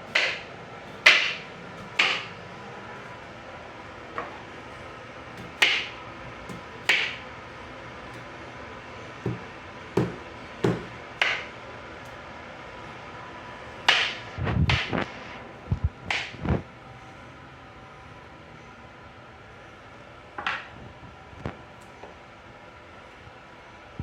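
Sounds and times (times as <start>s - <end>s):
utensils knocking on cookware: 0.0s - 11.6s, 13.8s - 14.9s.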